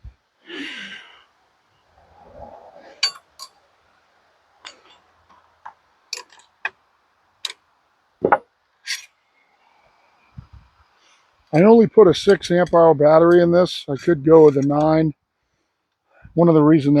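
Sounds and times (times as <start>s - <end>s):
metal tools clicking and clinking: 3.0s - 3.6s, 6.1s - 6.5s, 14.0s - 15.0s.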